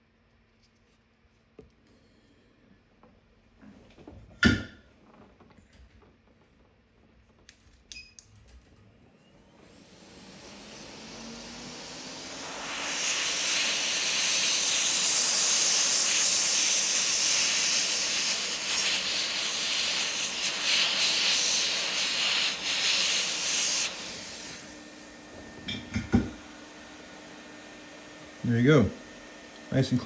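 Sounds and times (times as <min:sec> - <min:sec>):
heat gun blowing air: 0:09.4 - 0:28.8.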